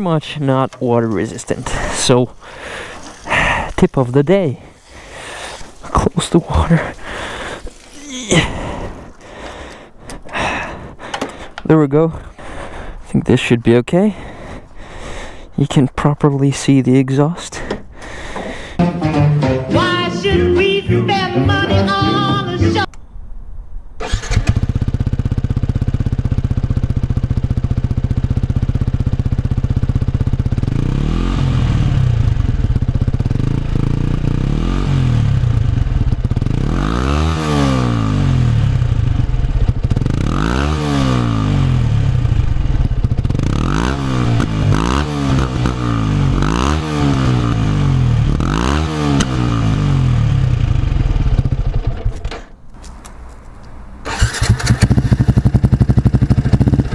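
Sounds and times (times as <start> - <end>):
motorcycle engine idling and revving: 0.0 - 9.7, 24.0 - 56.9.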